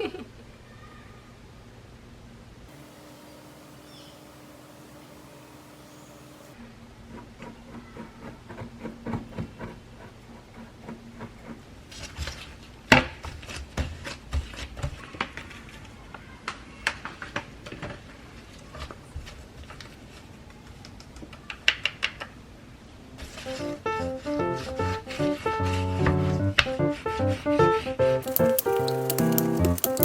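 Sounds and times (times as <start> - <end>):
low hum: 2.7 - 6.6
objects being handled: 28.2 - 30.0.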